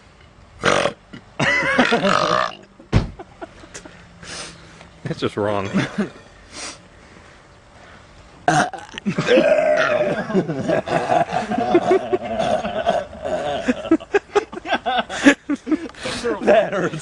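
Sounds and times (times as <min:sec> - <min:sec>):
man belching: 0:00.6 - 0:02.7, 0:08.4 - 0:13.9.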